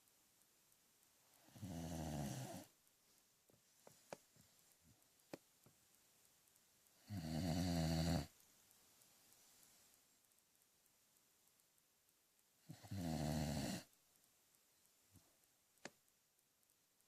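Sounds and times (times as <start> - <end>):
rattling snores: 1.4 - 2.7, 7.0 - 8.4, 12.6 - 13.9
faint clicks: 2.8 - 7.1, 14.1 - 17.0.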